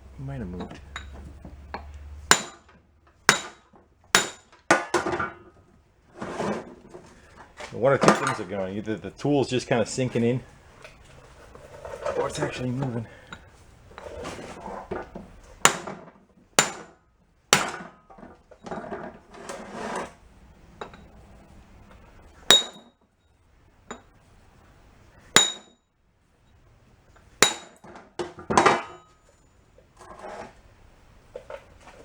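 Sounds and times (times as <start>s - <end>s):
hammer striking metal: 2.3s - 2.7s, 3.3s - 3.6s, 4.2s - 5.0s, 15.6s - 16.0s, 16.6s - 17.0s, 17.6s - 17.9s, 22.5s - 22.8s, 25.4s - 25.7s, 27.4s - 27.8s
tools rattling: 6.2s - 8.6s.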